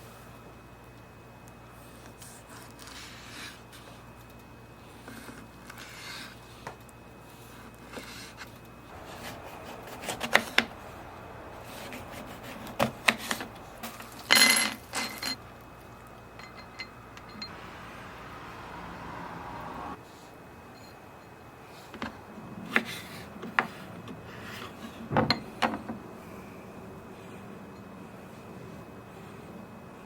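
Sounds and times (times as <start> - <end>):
ringing clink: 16.4 - 17.5.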